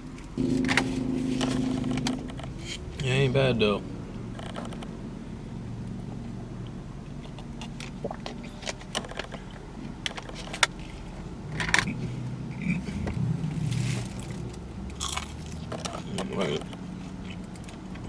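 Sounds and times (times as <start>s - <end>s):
low steady hum: 0.0s - 18.0s
chewing food: 14.1s - 18.0s.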